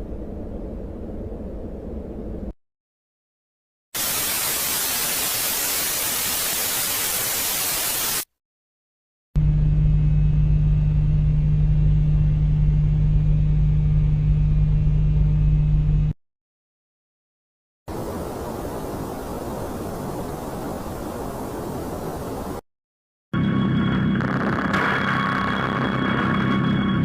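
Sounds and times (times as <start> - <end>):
full-range hiss: 4.0 - 8.3
low drone with steady hum: 9.4 - 16.2.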